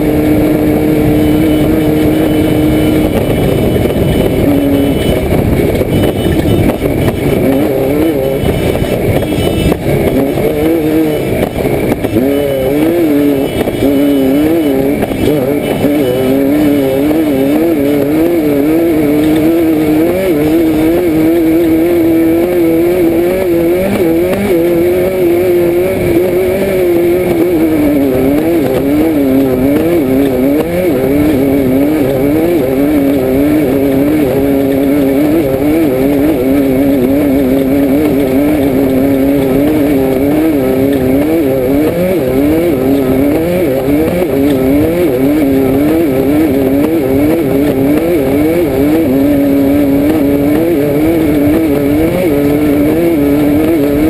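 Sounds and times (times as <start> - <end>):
car engine running hard: 0.0 - 54.0.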